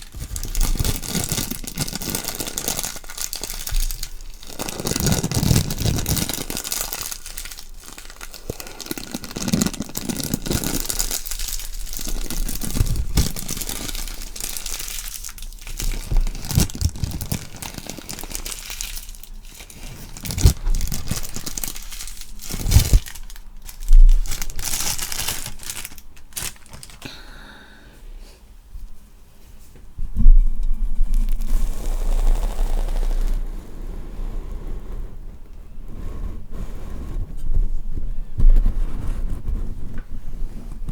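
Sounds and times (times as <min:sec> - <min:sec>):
crinkling and crumpling: 0:00.0 - 0:27.2, 0:30.2 - 0:36.4.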